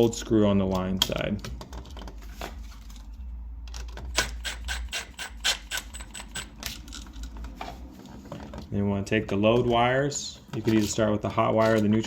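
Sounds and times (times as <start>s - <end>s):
screwdriver clicking and scraping: 4.1s - 7.3s.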